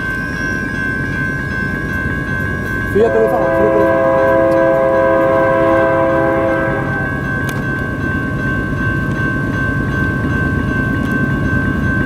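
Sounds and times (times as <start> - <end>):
two high steady tones: 0.0 - 8.8
freight train rumbling past: 0.0 - 12.0
locomotive air horn chord: 3.0 - 7.2.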